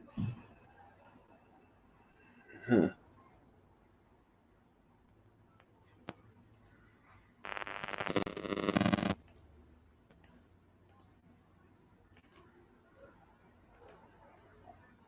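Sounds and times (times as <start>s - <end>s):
computer mouse clicking: 6.1s - 6.8s, 8.8s - 9.5s, 10.1s - 11.2s, 12.2s - 14.6s.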